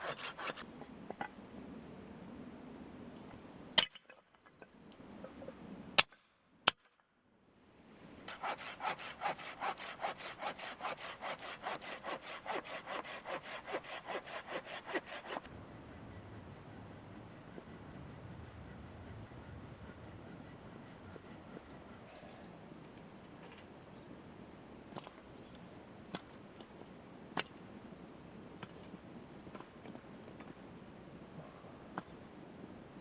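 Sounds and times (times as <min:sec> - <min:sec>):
hand saw cutting wood: 0:00.0 - 0:00.6, 0:08.3 - 0:15.5.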